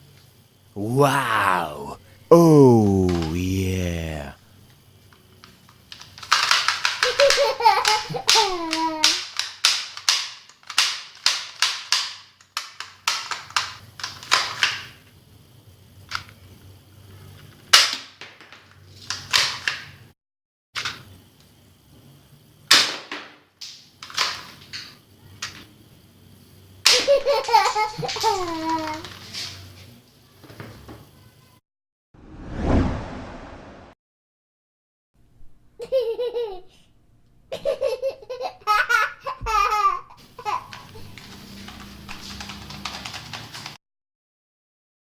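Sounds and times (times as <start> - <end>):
toy guns firing: 6.3 - 12.2.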